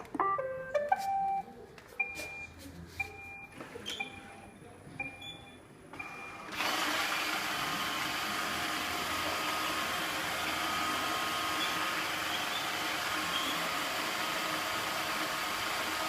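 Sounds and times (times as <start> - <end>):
vacuum motor running: 6.5 - 16.0.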